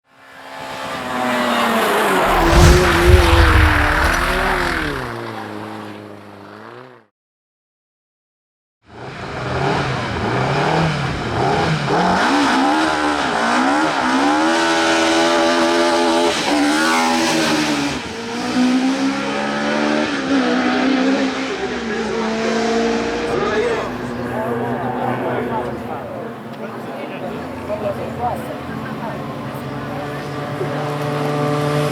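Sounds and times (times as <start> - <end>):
race car accelerating: 0.5 - 5.4, 9.4 - 31.9
race car engine revving: 1.5 - 5.2.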